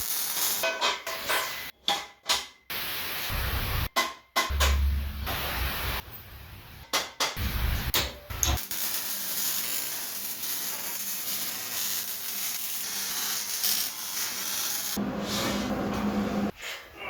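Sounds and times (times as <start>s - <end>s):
electric arc sizzling: 0.0s - 0.7s, 2.7s - 3.9s, 4.5s - 6.8s, 7.4s - 15.0s.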